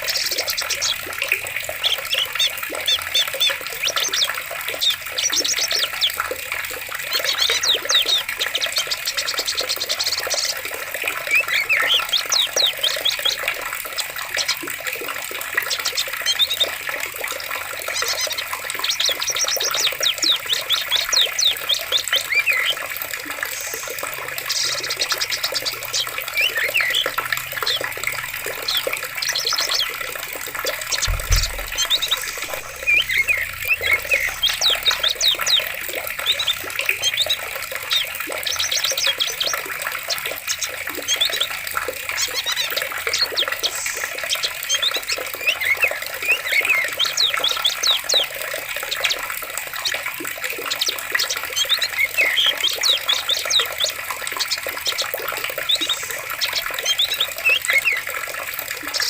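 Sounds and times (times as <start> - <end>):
birds chirping: 0.0 - 59.0
stream running water: 0.0 - 59.0
low thud: 31.0 - 33.2.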